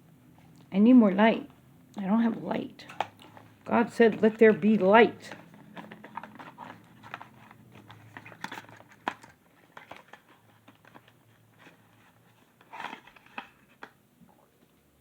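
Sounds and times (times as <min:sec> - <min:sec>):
packaging crinkling rustles: 0:02.8 - 0:14.0
packaging clicks: 0:05.3 - 0:11.8.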